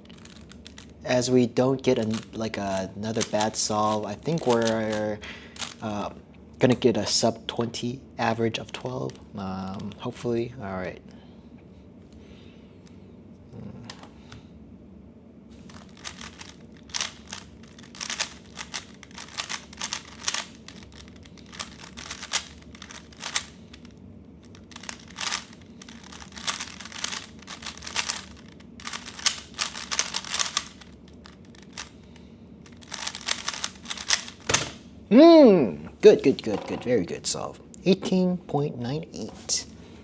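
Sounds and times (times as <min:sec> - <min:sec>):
puzzle cube clicking: 0:00.1 - 0:00.9, 0:02.0 - 0:05.0, 0:05.6 - 0:05.9, 0:15.7 - 0:23.9, 0:24.5 - 0:31.9, 0:32.6 - 0:34.8.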